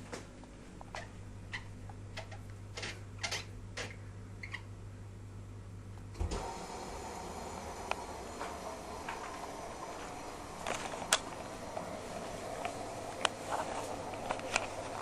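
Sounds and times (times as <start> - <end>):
washing machine humming: 0.0 - 15.0
higher steady running sound: 6.1 - 15.0.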